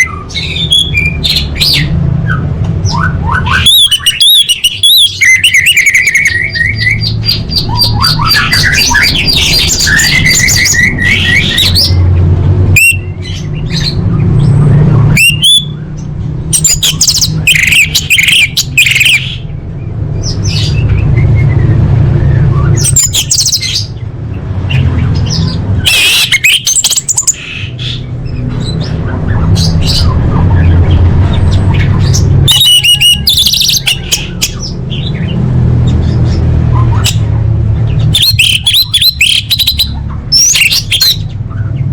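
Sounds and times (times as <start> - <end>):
bird squawks and chattering: 0.0 - 19.6, 24.6 - 41.9
bird whistled notes: 15.1 - 15.9, 25.8 - 27.4, 32.5 - 34.6.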